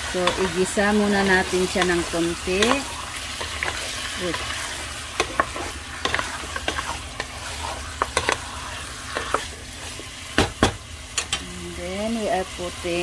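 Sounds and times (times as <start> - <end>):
utensil scraping a pan: 0.0 - 10.1
chicken sizzling in hot oil: 0.0 - 13.0.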